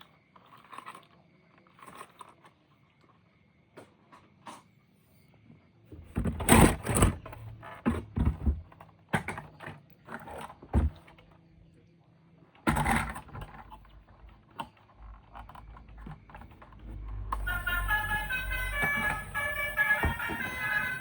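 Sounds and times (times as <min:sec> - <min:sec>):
plastic toys being handled: 0:13.3 - 0:21.0.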